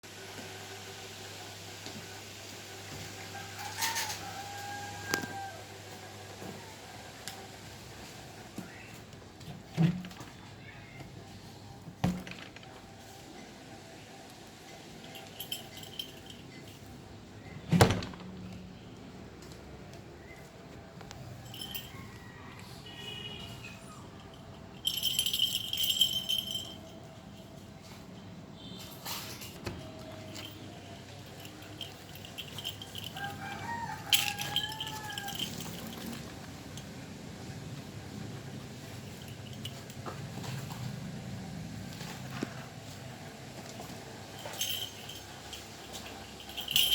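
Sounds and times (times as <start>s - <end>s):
rooster crowing: 3.2s - 7.0s, 21.4s - 24.0s, 31.8s - 36.3s.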